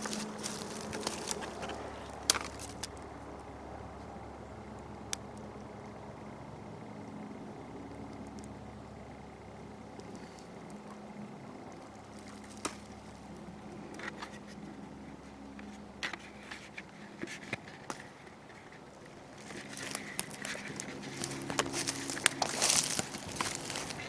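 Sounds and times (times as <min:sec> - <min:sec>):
footsteps crunching dry leaves: 0:00.0 - 0:02.9, 0:19.4 - 0:24.0.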